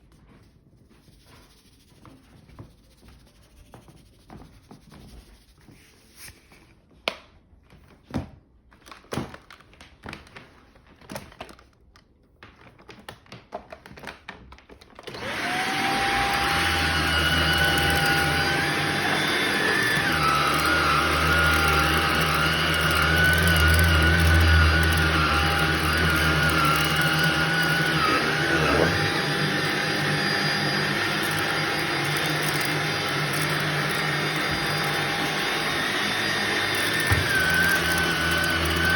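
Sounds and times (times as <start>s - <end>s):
vacuum cleaner motor whine: 15.1s - 38.9s.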